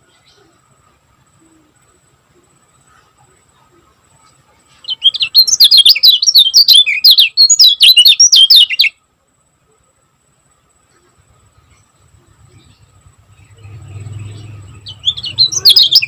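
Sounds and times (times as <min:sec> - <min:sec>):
bird chirping rapidly: 0:04.8 - 0:09.0, 0:11.5 - 0:16.0.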